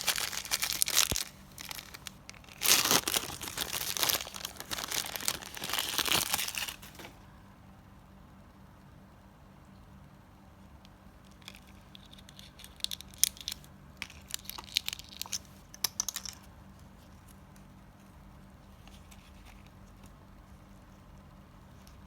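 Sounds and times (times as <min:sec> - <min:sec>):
faint plastic rustling: 0:00.0 - 0:07.2, 0:11.2 - 0:22.0
plastic packaging crinkling and tearing: 0:00.0 - 0:07.2.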